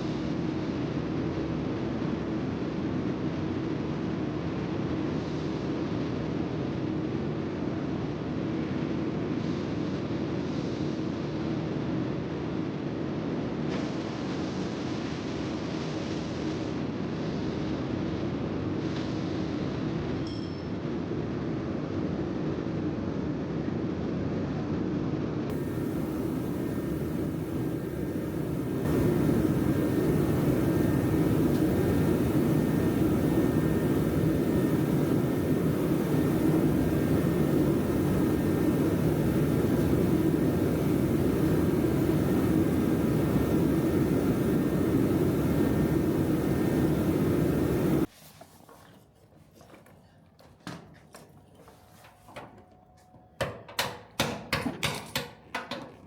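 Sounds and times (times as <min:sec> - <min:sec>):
loud machine running: 0:25.5 - 0:48.1
sharp metallic knocks and rattles: 0:53.4 - 0:56.0.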